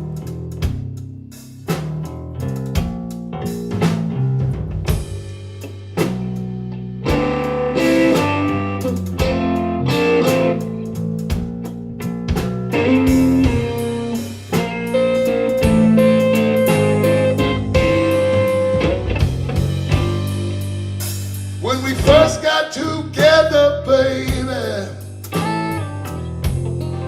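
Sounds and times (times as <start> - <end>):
bass guitar: 0.0 - 27.0
drum kit steady beat: 0.0 - 27.0
electric guitar leading: 6.7 - 11.5, 12.5 - 27.0.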